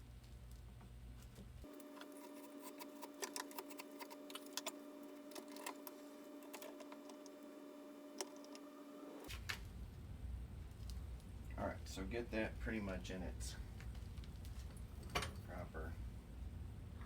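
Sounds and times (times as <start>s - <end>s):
steady electrical hum: 0.0s - 17.0s
small parts clicking and tapping: 1.3s - 7.5s, 8.1s - 8.7s.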